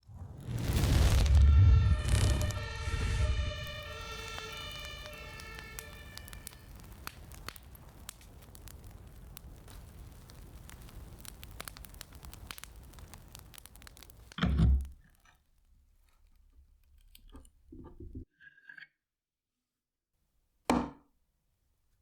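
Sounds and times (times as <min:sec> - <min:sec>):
fire crackling: 0:00.0 - 0:17.3
sharp pops: 0:00.4 - 0:15.2
siren: 0:01.0 - 0:07.5.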